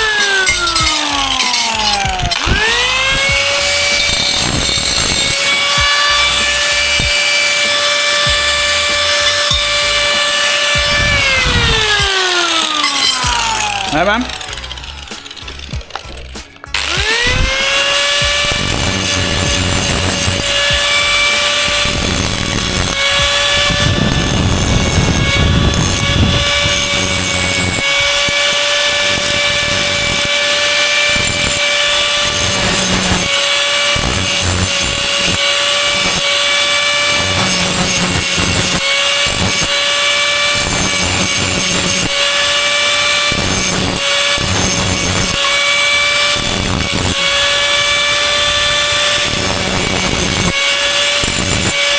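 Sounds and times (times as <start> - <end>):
angle grinder whining: 0.0 - 51.9
grinding hiss on metal: 18.2 - 51.9.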